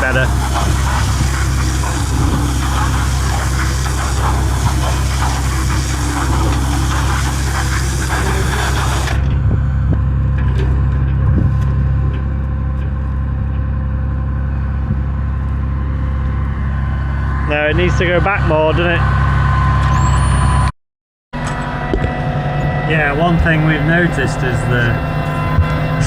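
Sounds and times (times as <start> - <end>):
broad hiss: 0.0 - 9.2
engine humming deeply: 0.0 - 20.7, 21.4 - 26.0.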